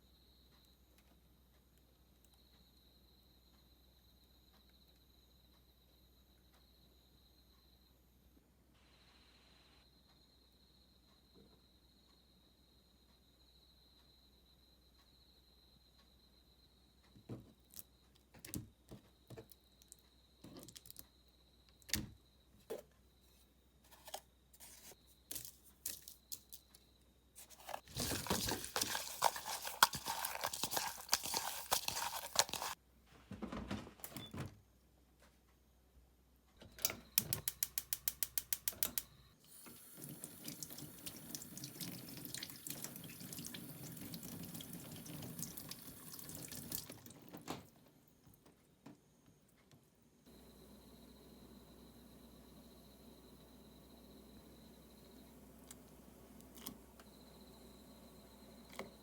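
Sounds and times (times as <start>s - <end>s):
tap water running and splashing: 27.7s - 32.8s, 39.6s - 47.6s.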